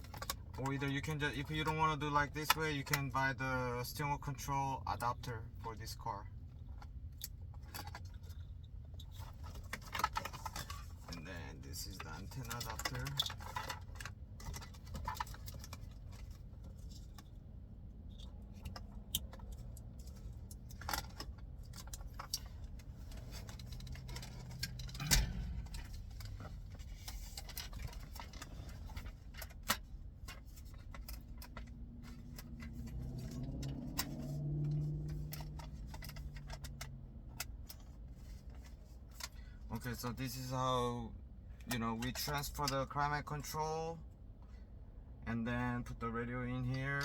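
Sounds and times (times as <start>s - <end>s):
plastic parts clicking and rattling: 0.0s - 0.9s, 6.6s - 11.3s, 11.9s - 17.4s, 18.1s - 39.4s.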